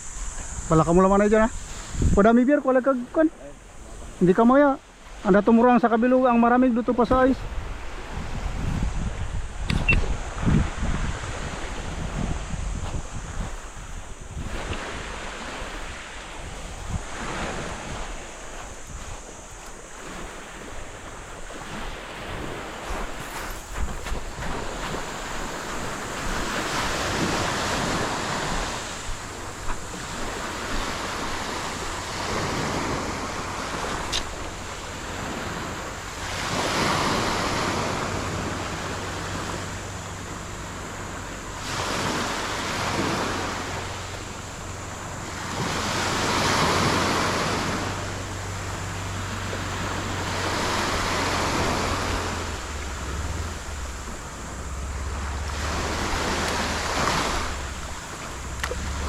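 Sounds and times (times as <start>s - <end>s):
sea water washing: 0.0s - 59.0s
sharp click: 9.6s - 10.1s, 34.0s - 34.3s.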